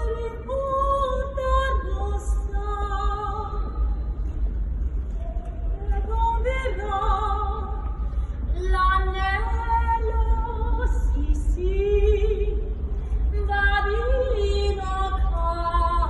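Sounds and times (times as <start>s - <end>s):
low hum: 0.0s - 16.0s
woman singing operatically: 5.8s - 7.8s.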